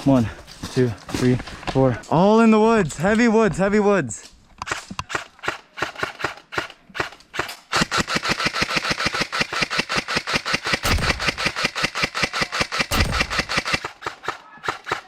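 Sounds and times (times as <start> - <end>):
airsoft gun firing: 5.8 - 15.0
heavy low thumps: 10.8 - 11.6, 12.9 - 13.6.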